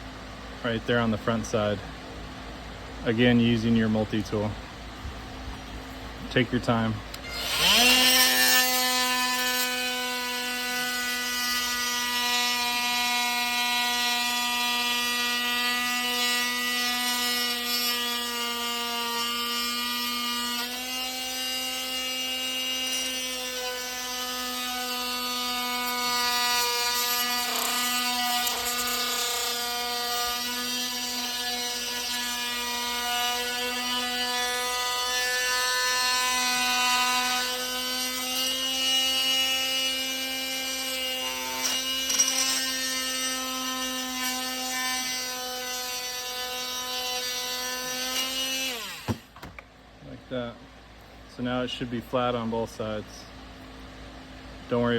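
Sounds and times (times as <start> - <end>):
oscillating multi-tool whine: 7.1 - 49.4.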